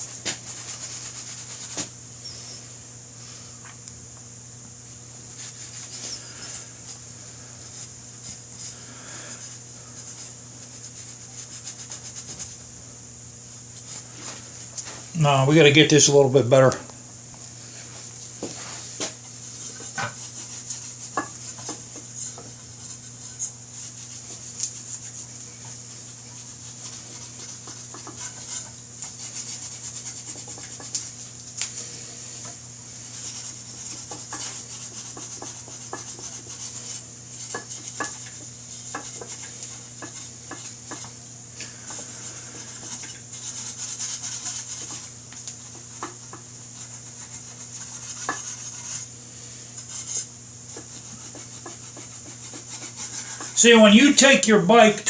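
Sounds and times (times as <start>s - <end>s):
low electrical hum: 0.0s - 55.0s
rag rubbing metal disc: 42.6s - 49.1s, 49.8s - 53.6s.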